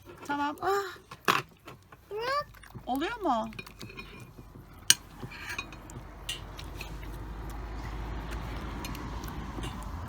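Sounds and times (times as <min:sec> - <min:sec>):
tableware clinking: 0:03.6 - 0:07.1.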